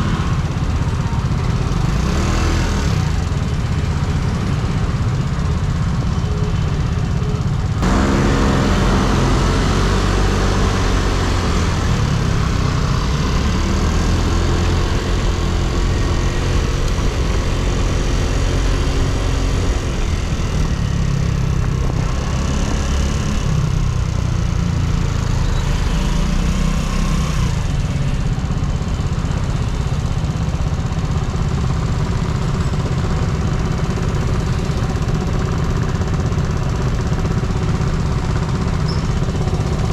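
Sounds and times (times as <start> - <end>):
scooter engine accelerating: 0.0 - 6.1, 7.6 - 39.9
road noise: 0.0 - 39.9
rushing wind: 7.8 - 24.0.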